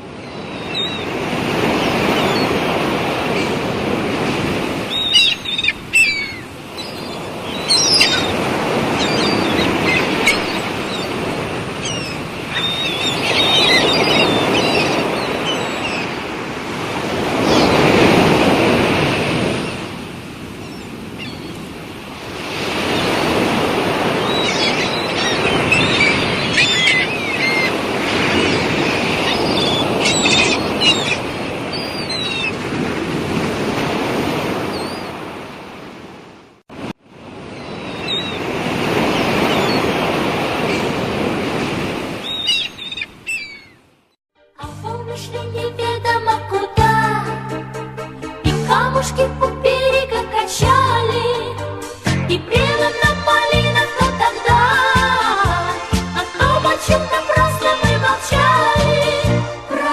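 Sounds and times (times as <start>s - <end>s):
sea waves washing: 0.0s - 43.8s, 45.7s - 59.9s
small birds chirping: 0.3s - 1.1s, 4.9s - 16.2s, 20.6s - 21.7s, 24.1s - 27.8s, 28.4s - 32.6s, 42.2s - 43.8s.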